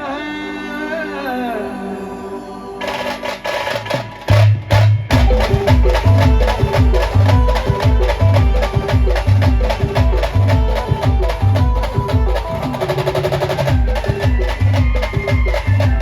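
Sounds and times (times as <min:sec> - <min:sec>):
singing: 0:00.0 - 0:03.9
fast percussion rhythm: 0:02.8 - 0:16.0
heavy bass beat: 0:04.8 - 0:12.8.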